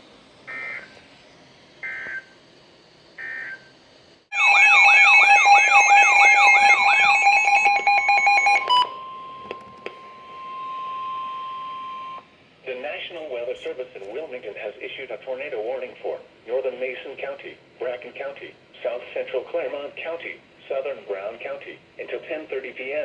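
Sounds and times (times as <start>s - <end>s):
steady alert tone: 4.3s - 11.6s
digital data chirps: 4.4s - 8.7s
warbling alert tones: 4.4s - 9.8s.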